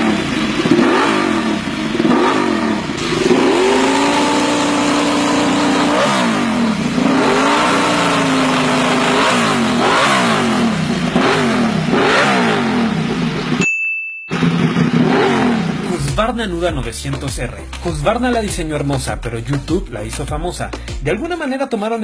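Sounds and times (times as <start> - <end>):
motorcycle engine revving: 0.0 - 13.6, 14.3 - 16.4.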